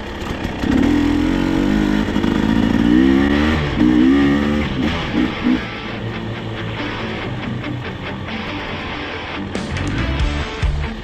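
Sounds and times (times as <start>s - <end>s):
off-road vehicle engine revving: 0.0s - 11.0s.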